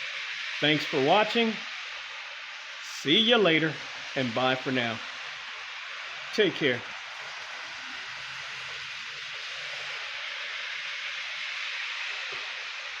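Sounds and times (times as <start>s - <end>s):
background hiss: 0.0s - 13.0s.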